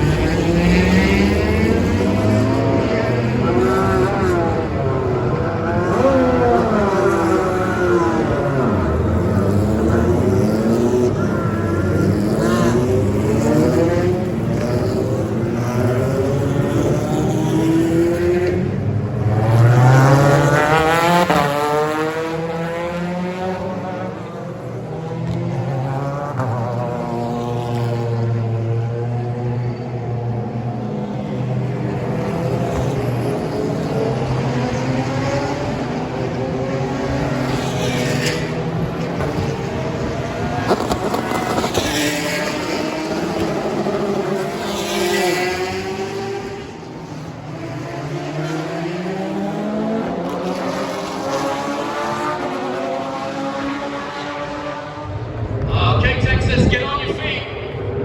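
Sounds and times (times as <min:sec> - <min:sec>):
racing car engines: 0:00.0 - 0:58.0
racing car passing by: 0:00.0 - 0:58.0.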